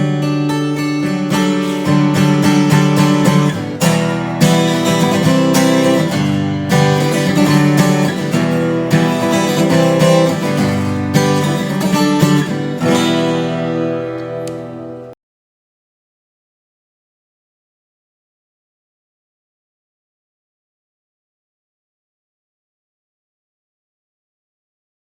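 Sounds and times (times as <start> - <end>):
acoustic guitar strummed: 0.0 - 15.1.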